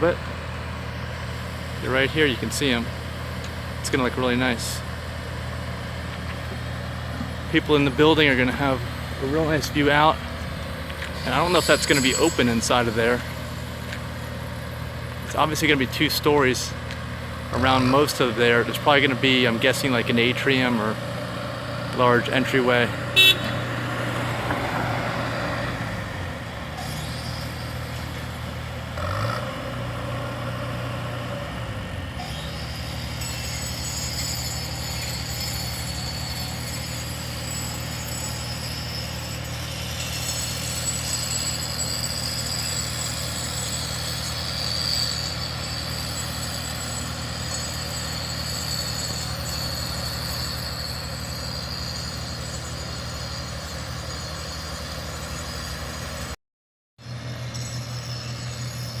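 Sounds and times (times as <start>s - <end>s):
vehicle engine idling: 0.0s - 33.2s.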